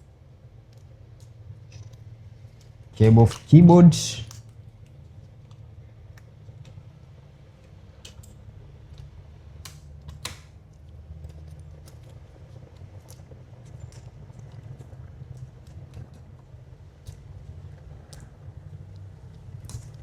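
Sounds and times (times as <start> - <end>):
steady low hum: 0.0 - 20.0
small clicks of cable connectors: 4.2 - 6.8, 7.6 - 12.2.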